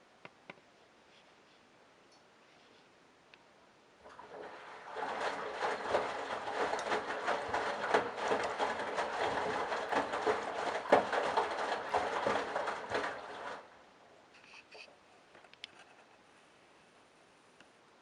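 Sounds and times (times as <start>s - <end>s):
laundry and water sloshing: 4.0s - 13.9s
washing machine drum turning: 4.1s - 13.7s.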